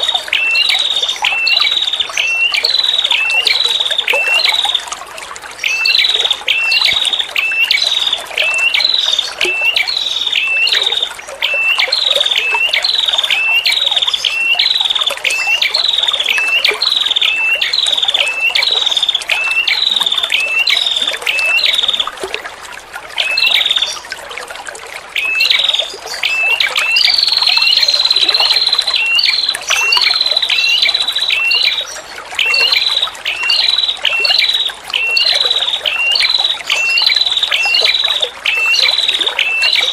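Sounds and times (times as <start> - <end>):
trickling water: 0.0 - 39.9.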